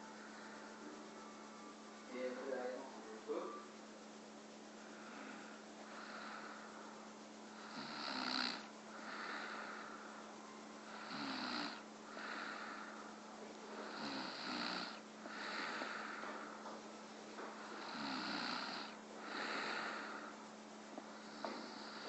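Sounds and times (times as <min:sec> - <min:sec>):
steady hum: 0:00.0 - 0:22.0
person snoring heavily: 0:04.9 - 0:06.8, 0:07.5 - 0:10.1, 0:10.9 - 0:13.0, 0:13.8 - 0:16.2, 0:17.6 - 0:20.4, 0:21.1 - 0:22.0.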